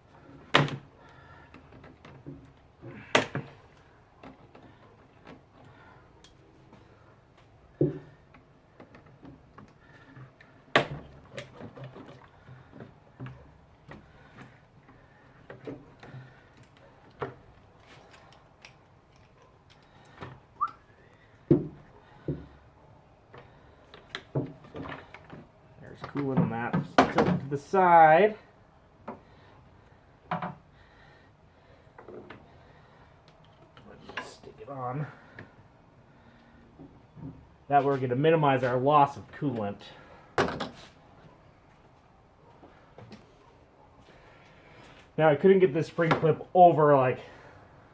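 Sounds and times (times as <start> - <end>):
hands handling hose and tank: 0.1 - 27.7.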